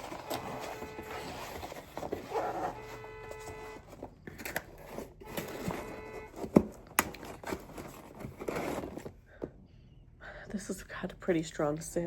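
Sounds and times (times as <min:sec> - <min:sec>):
packaging rustling and clicking: 0:00.0 - 0:09.2.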